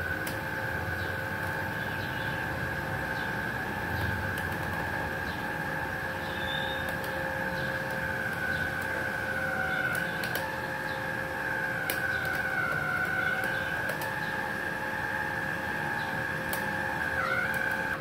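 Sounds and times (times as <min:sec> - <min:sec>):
welder high whine: 0:00.0 - 0:18.0
faint clicks: 0:07.8 - 0:10.5.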